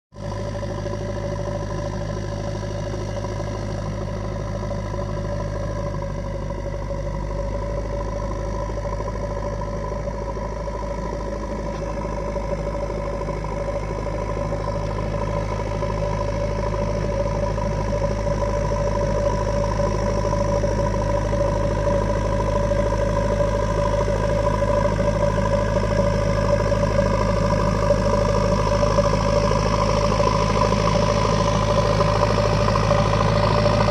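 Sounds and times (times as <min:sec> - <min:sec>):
diesel engine running: 0:00.1 - 0:33.9.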